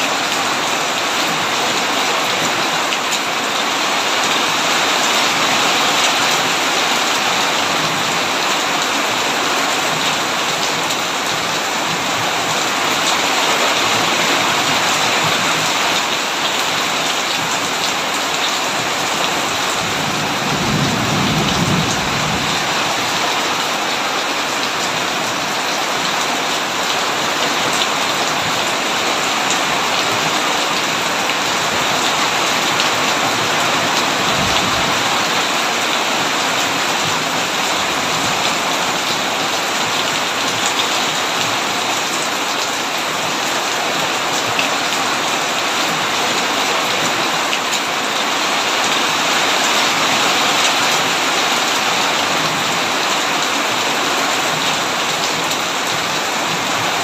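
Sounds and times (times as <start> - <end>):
heavy rain on a tin roof: 0.0 - 57.0
thunder rolling: 19.7 - 23.2.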